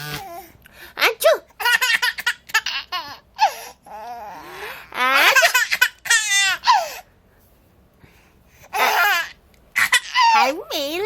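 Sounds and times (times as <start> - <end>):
baby laughing: 1.6 - 3.6, 5.0 - 7.0, 8.8 - 10.6.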